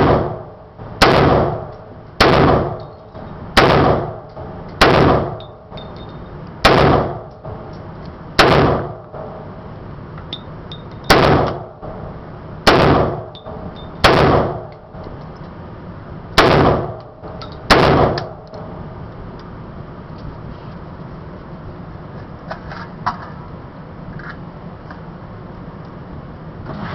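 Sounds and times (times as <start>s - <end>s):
rifle shots with echo: 0.0s - 2.8s, 3.6s - 5.4s, 6.6s - 7.6s, 8.4s - 9.5s, 11.1s - 12.0s, 12.6s - 13.3s, 14.0s - 14.7s, 16.4s - 18.4s.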